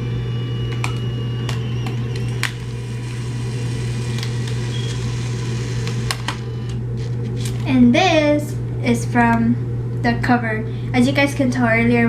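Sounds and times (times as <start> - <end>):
camera motor whine: 0.0 - 7.7
steady low hum: 0.0 - 12.0.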